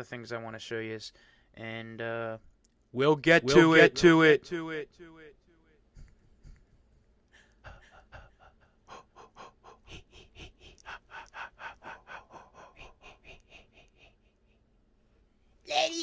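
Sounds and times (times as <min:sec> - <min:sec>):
person gasping or whispering: 0:07.4 - 0:14.2.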